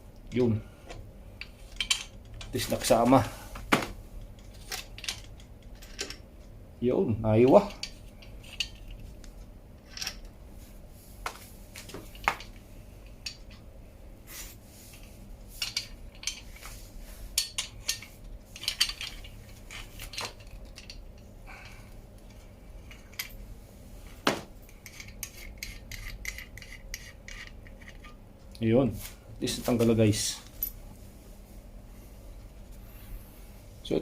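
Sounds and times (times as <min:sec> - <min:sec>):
metal tools clinking: 0:04.4 - 0:06.2.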